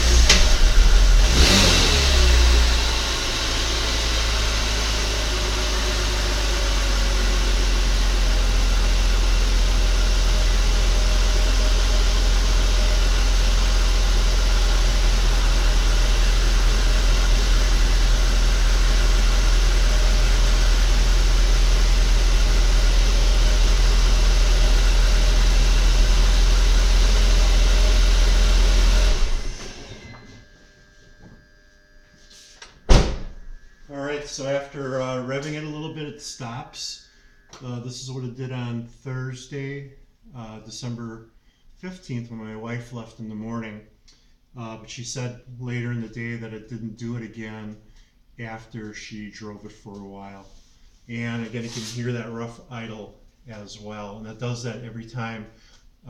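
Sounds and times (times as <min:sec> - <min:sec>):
car engine revving and idling: 0:00.0 - 0:30.4.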